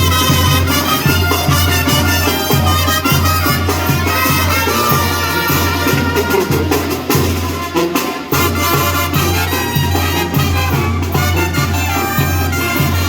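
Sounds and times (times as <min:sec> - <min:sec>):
brass band playing: 0:00.0 - 0:13.0
percussion strokes: 0:00.0 - 0:13.0.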